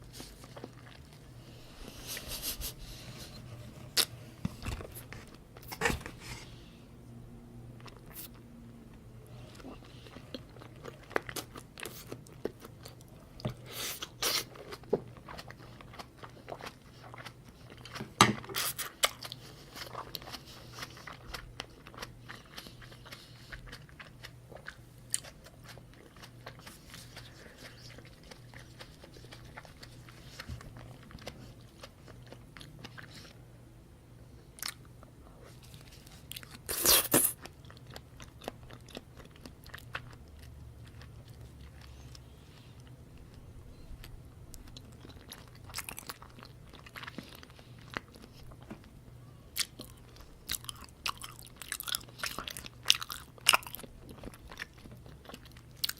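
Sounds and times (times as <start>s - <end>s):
wet chewing and biting: 9.8s - 33.4s, 49.6s - 55.9s.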